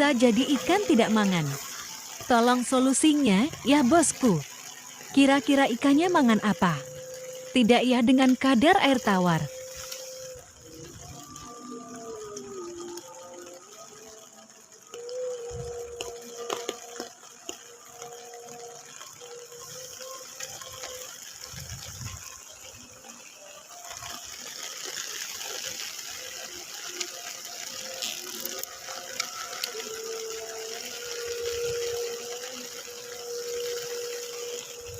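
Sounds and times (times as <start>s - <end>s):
rain: 0.0s - 34.9s
water rushing: 0.0s - 34.9s.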